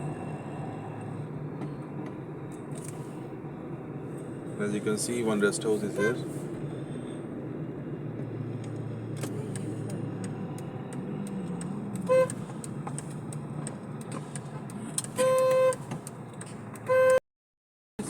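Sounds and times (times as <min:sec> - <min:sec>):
car road and engine noise: 0:00.0 - 0:17.2
vehicle horn honking: 0:12.0 - 0:12.4, 0:15.2 - 0:15.8, 0:16.9 - 0:17.2.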